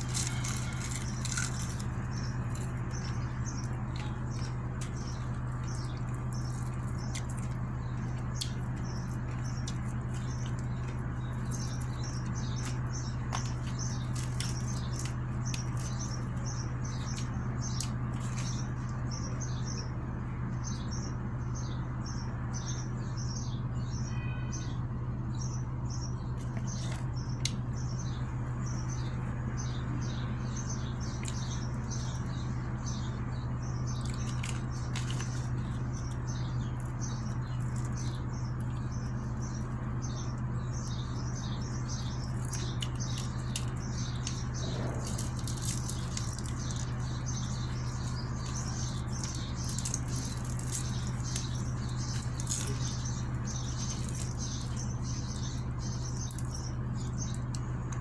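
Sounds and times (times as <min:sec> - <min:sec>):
eating crunches and clicks: 0:00.0 - 0:20.0, 0:26.0 - 0:58.0
small birds chirping: 0:00.0 - 0:58.0
steady low hum: 0:00.0 - 0:58.0.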